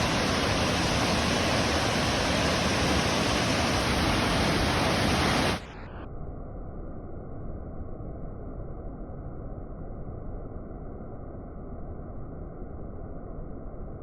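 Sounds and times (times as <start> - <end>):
waterfall rushing: 0.0 - 5.9.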